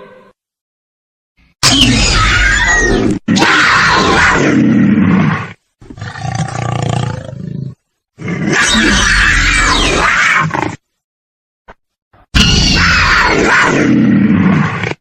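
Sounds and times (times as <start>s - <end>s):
dinosaur roars: 12.4s - 15.0s.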